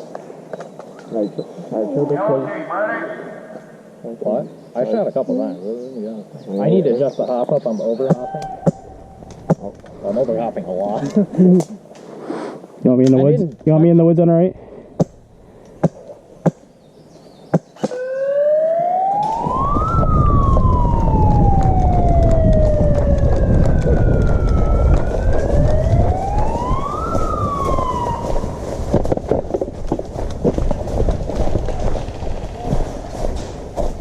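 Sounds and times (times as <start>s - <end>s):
motor siren wailing: 8.1s - 11.1s, 17.8s - 29.0s
loud low rumbling: 8.2s - 11.6s, 14.4s - 15.8s, 19.4s - 29.3s.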